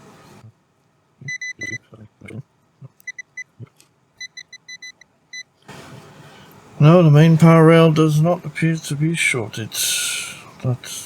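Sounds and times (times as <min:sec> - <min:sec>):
multimeter high beeps: 0:01.2 - 0:01.8, 0:03.0 - 0:03.6, 0:04.2 - 0:05.5.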